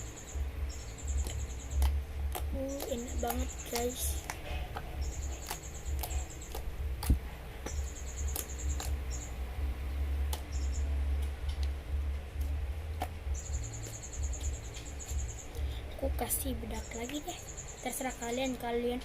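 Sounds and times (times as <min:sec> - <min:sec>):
slime clicking and popping: 0:01.2 - 0:07.2.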